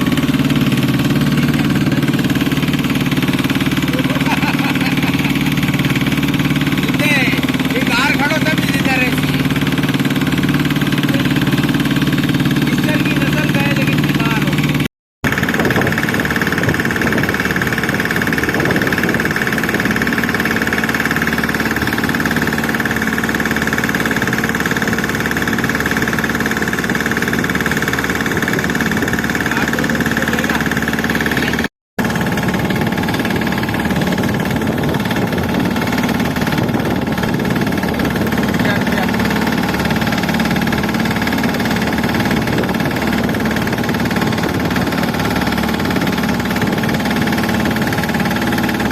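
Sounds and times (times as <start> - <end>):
engine droning: 0.0 - 48.9.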